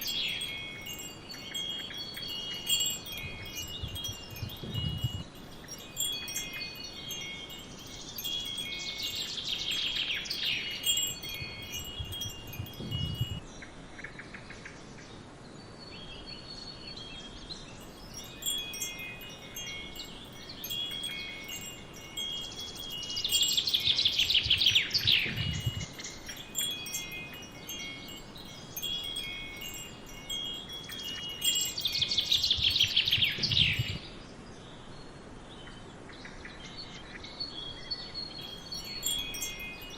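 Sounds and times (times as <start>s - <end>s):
wind chimes ringing: 0.0s - 13.5s, 17.7s - 34.1s, 38.3s - 39.9s.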